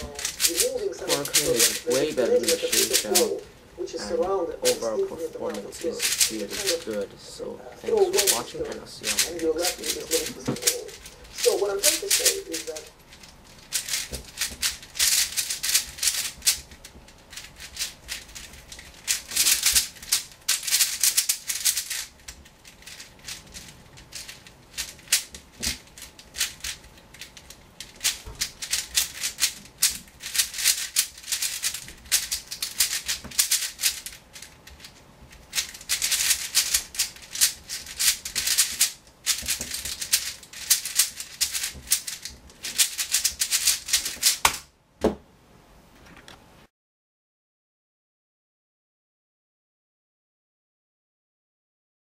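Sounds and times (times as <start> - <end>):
plastic puzzle cube clicking: 0.0 - 3.3, 8.1 - 44.6.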